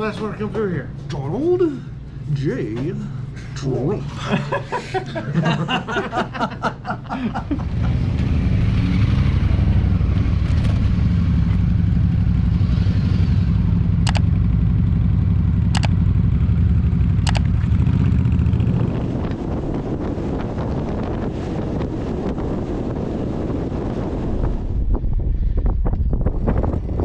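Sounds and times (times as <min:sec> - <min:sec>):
sharp ticks: 0:14.1 - 0:14.3, 0:17.3 - 0:17.5.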